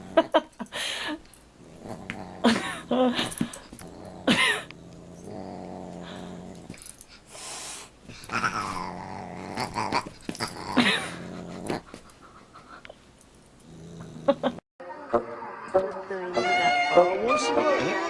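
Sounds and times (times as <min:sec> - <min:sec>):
pet animals growling: 0:01.6 - 0:07.1, 0:08.1 - 0:12.6, 0:13.6 - 0:14.6.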